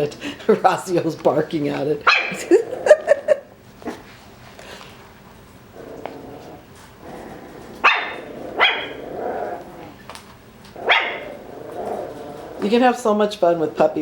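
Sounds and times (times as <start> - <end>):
puppy yapping: 2.1 - 3.0, 7.7 - 10.0, 10.8 - 12.2.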